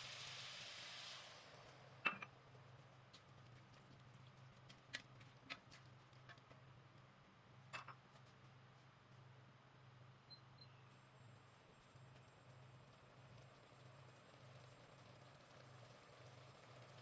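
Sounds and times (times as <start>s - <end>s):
food sizzling in a pan: 0.0s - 2.0s.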